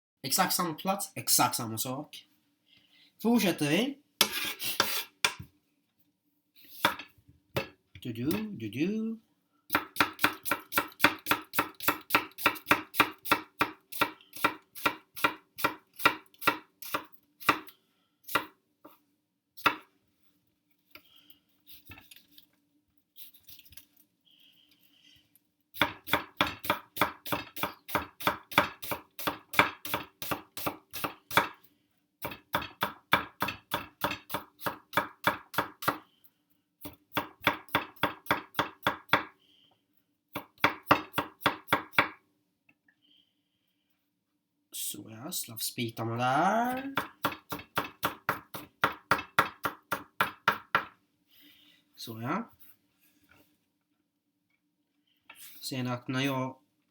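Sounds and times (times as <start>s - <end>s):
knife chopping on cutting board: 4.2s - 5.4s, 6.8s - 7.7s, 9.7s - 17.7s, 19.6s - 19.9s, 25.8s - 31.6s, 32.2s - 36.0s, 36.8s - 39.3s, 40.4s - 42.2s, 46.7s - 50.9s.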